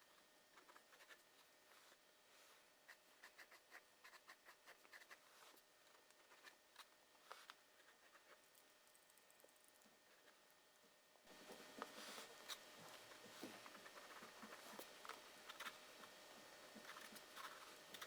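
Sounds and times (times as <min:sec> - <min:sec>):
drawing tool scratching paper: 0:02.9 - 0:05.6.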